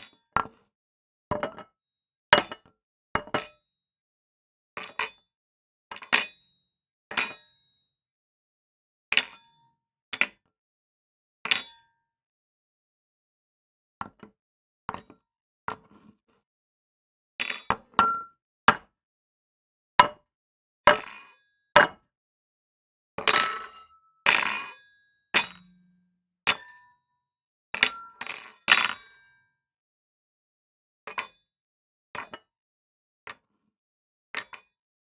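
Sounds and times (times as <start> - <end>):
dishes and cutlery clinking: 18.0 - 18.3, 23.3 - 23.9, 25.4 - 25.8, 27.9 - 29.1.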